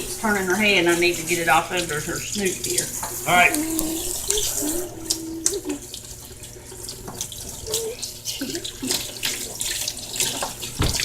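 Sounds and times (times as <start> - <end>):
water running from sink tap: 0.0 - 11.0
water splashing: 0.0 - 11.0.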